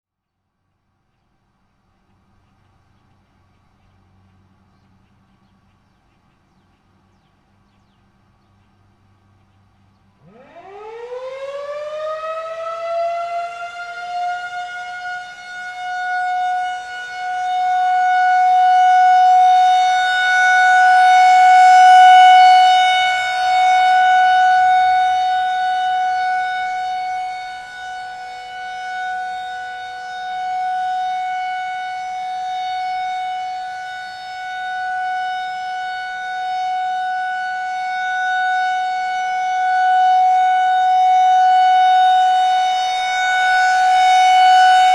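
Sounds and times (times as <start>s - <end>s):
outdoor warning siren: 10.1s - 44.9s.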